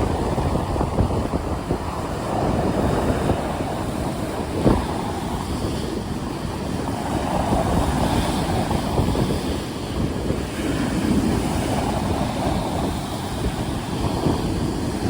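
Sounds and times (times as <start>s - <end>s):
stormy sea waves surging: 0.0s - 15.0s
wind rumbling on microphone: 0.0s - 15.0s.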